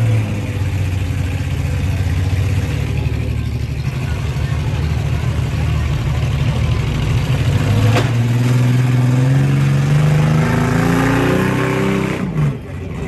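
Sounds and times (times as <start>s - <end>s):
truck engines revving hard: 0.0s - 13.0s
sharp bang: 7.8s - 8.8s.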